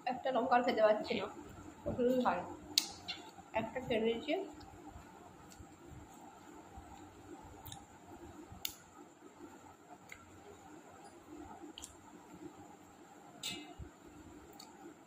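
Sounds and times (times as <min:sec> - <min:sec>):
sharp mouth clicks: 0:13.4 - 0:13.7.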